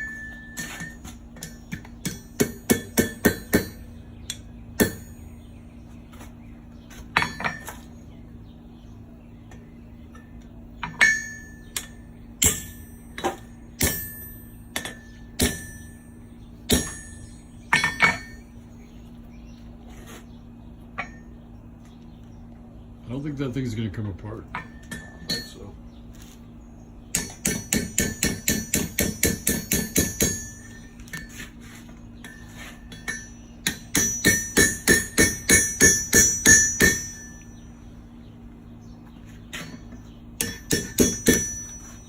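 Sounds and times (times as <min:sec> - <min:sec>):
hammer striking steel: 0:00.0 - 0:05.3, 0:10.8 - 0:18.4, 0:24.6 - 0:25.7, 0:27.1 - 0:31.3, 0:32.2 - 0:37.6, 0:40.4 - 0:42.0.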